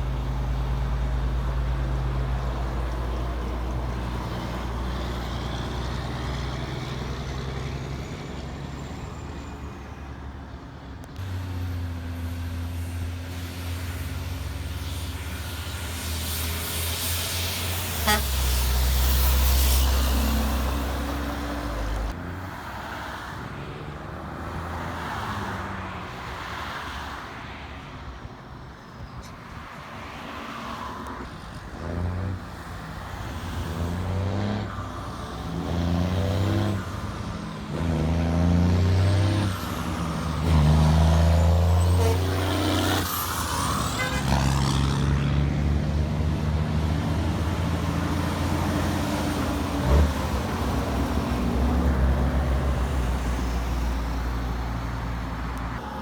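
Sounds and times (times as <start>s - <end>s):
heavy truck engine changing gears: 0.0s - 22.6s, 31.0s - 56.0s.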